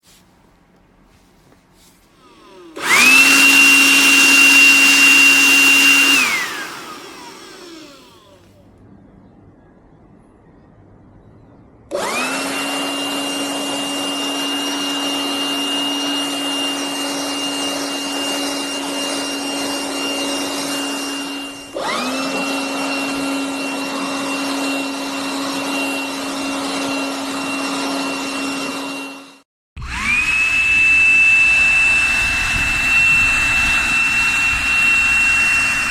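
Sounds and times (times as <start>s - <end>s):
cordless blower whining: 2.1s - 8.6s, 11.9s - 35.9s
rushing air: 30.0s - 35.9s.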